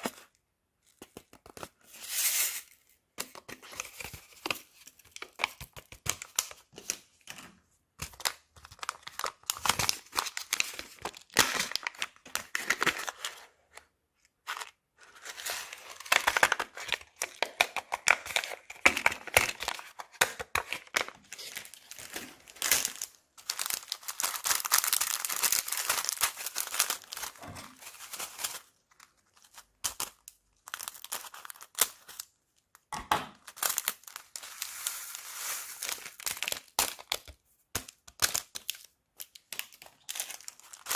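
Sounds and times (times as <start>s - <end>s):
plastic bags crinkling: 8.2s - 13.2s, 20.5s - 32.3s, 33.4s - 40.9s.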